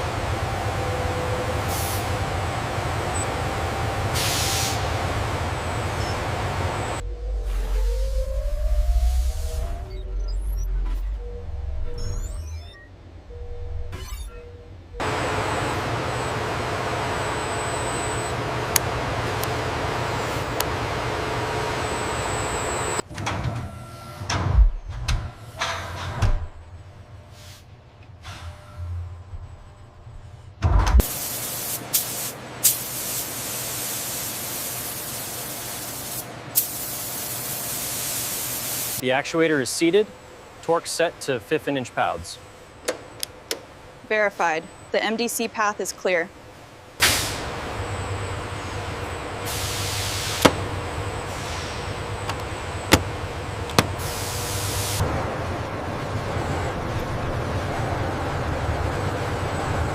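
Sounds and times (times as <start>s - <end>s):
low hum: 0.0s - 23.0s
low machinery hum: 0.0s - 31.0s, 39.3s - 59.9s.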